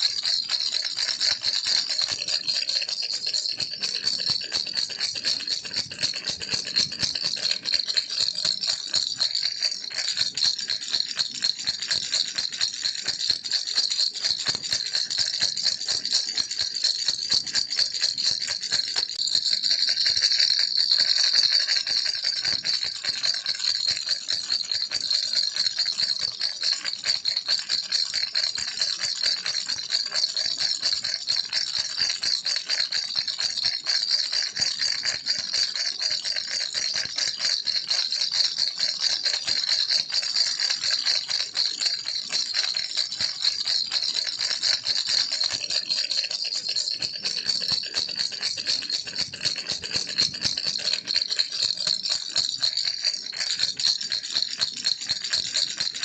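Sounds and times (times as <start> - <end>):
baby's toy rattle shaken: 0.0 - 56.0.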